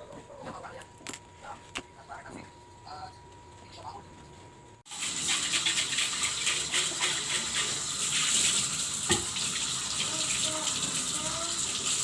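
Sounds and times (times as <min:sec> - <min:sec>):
tap water running into sink: 0:04.9 - 0:12.0.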